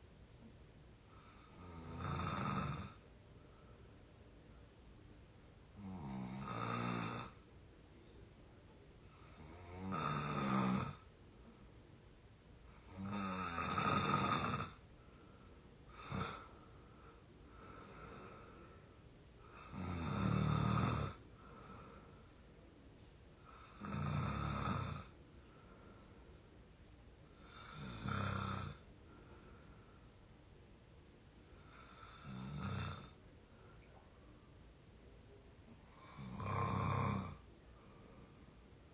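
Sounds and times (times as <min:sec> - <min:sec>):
person snoring: 0:01.2 - 0:03.0, 0:05.8 - 0:07.4, 0:09.2 - 0:11.0, 0:12.8 - 0:14.8, 0:15.9 - 0:16.5, 0:19.5 - 0:22.0, 0:23.4 - 0:25.2, 0:27.4 - 0:28.8, 0:31.7 - 0:33.2, 0:35.9 - 0:37.4.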